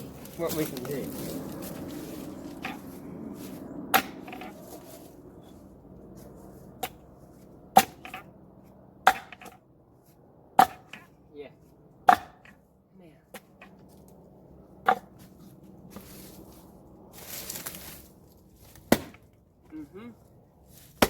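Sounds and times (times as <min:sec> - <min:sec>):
axe splitting wood: 0:02.6 - 0:02.8, 0:03.9 - 0:04.6, 0:06.8 - 0:07.0, 0:07.7 - 0:08.3, 0:09.0 - 0:09.6, 0:10.6 - 0:11.1, 0:12.0 - 0:12.6, 0:14.8 - 0:15.1, 0:18.8 - 0:19.3.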